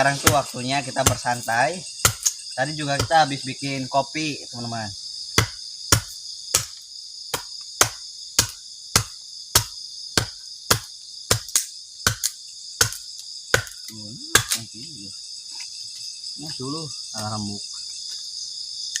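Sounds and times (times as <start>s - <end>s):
crickets chirping: 0.0s - 19.0s
sharp knocks or chops: 7.3s - 13.0s, 13.6s - 14.6s.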